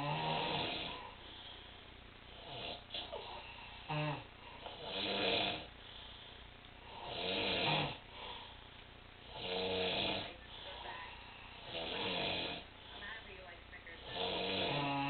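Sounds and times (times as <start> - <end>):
person snoring: 0.0 - 1.2, 2.4 - 5.7, 6.8 - 8.5, 9.3 - 12.7, 14.0 - 15.0
quiet breathing: 0.0 - 15.0.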